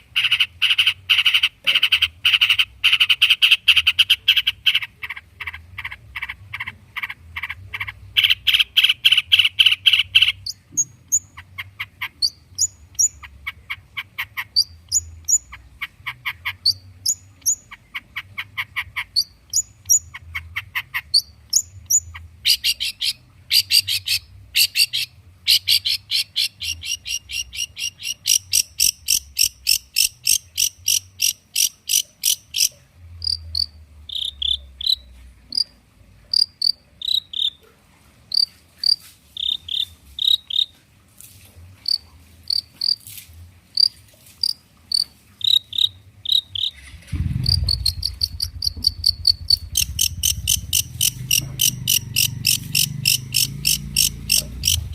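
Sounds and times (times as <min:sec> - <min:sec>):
bird chirping: 0:00.0 - 0:37.7, 0:38.3 - 0:40.8, 0:43.8 - 0:54.9
low rumble: 0:46.8 - 0:54.9.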